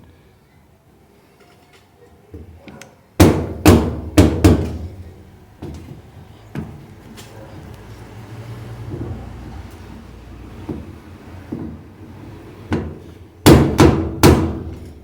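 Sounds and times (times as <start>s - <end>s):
sharp knocks on washing machine: 3.2s - 5.0s, 12.7s - 14.8s.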